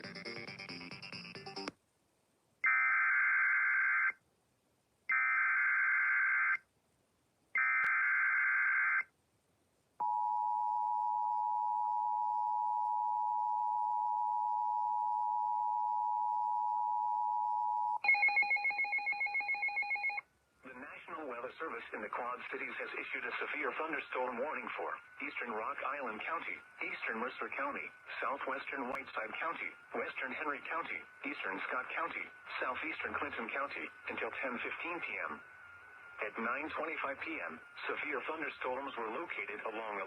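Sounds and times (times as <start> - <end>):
rapidly pulsing electronic tone: 21.8 - 40.0.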